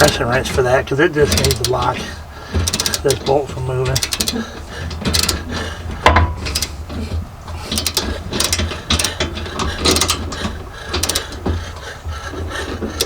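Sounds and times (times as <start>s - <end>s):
socket ratchet wrench clicking: 1.2s - 1.9s, 2.6s - 4.5s, 5.1s - 5.5s, 6.4s - 6.9s, 7.6s - 10.3s, 11.0s - 11.4s.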